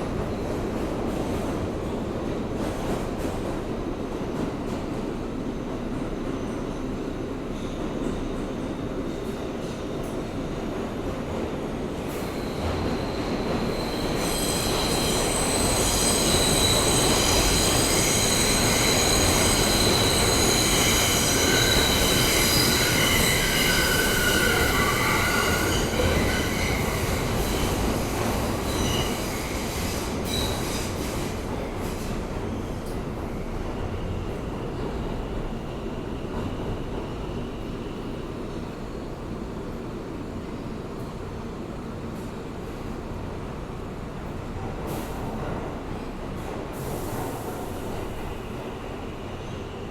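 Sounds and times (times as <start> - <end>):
subway wheels and motors rumbling: 0.0 - 49.9
high-pitched wheel squeal: 13.6 - 27.0.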